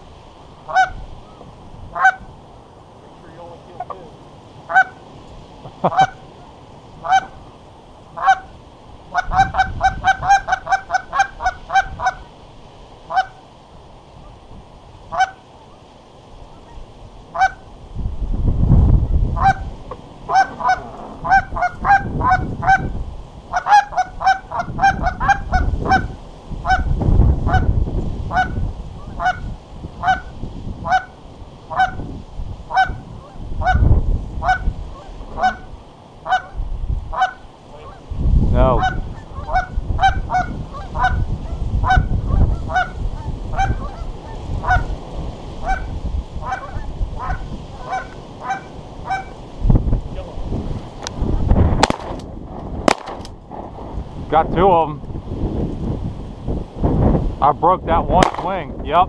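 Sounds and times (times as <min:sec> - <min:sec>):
goose honking: 0:00.6 - 0:02.3, 0:04.7 - 0:05.0, 0:05.8 - 0:07.4, 0:08.2 - 0:12.3, 0:13.1 - 0:13.4, 0:15.1 - 0:15.4, 0:16.5 - 0:17.7, 0:19.3 - 0:27.7, 0:28.3 - 0:32.1, 0:32.7 - 0:38.1, 0:38.7 - 0:45.0, 0:45.6 - 0:49.4
wind buffeting microphone: 0:08.2 - 0:12.3, 0:16.6 - 0:59.0.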